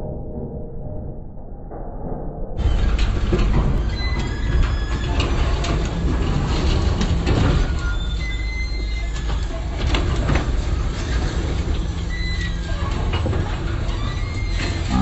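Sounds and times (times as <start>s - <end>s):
vehicle low rumble: 0.0s - 15.0s
scrap metal rattling: 2.6s - 15.0s
short high squeaks: 7.6s - 9.7s, 11.8s - 12.9s, 13.9s - 15.0s.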